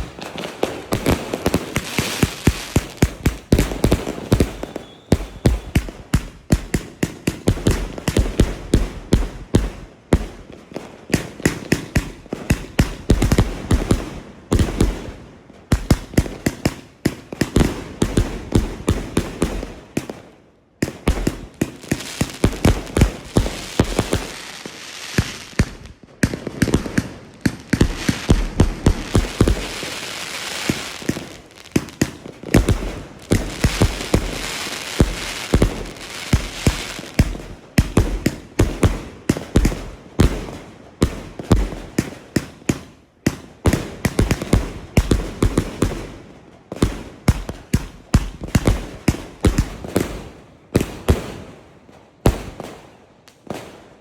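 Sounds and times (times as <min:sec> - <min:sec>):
firework launch thumps and bangs: 0:00.0 - 0:06.9, 0:25.2 - 0:30.0
firework crackling: 0:00.0 - 0:09.0, 0:21.0 - 0:40.6.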